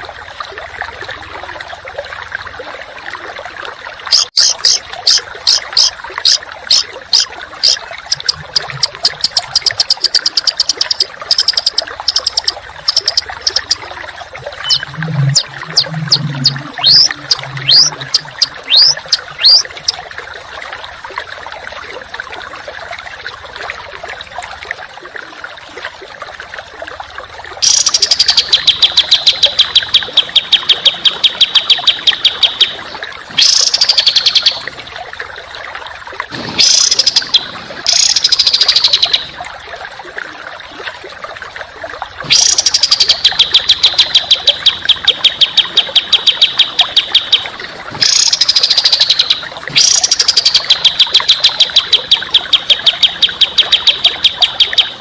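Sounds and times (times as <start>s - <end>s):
songbird singing rapid notes: 4.2s - 13.8s, 14.6s - 19.9s, 27.6s - 32.8s, 36.6s - 39.3s, 42.3s - 55.0s.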